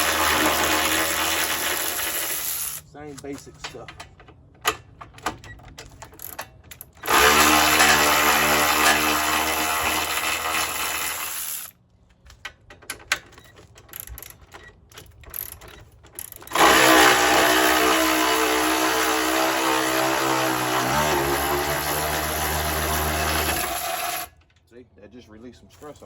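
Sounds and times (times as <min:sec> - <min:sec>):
power tool spinning bolts: 0:00.0 - 0:02.9, 0:05.8 - 0:11.7, 0:13.6 - 0:24.4.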